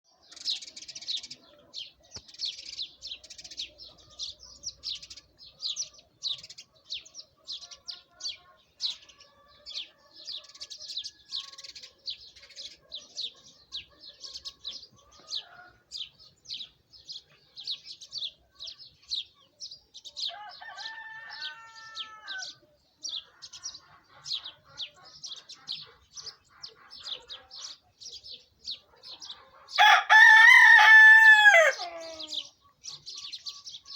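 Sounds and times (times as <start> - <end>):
chicks chirping: 0.1 - 20.4, 22.1 - 33.9
loud chicken call: 20.3 - 22.6, 29.8 - 32.4
hens calling: 29.8 - 32.5.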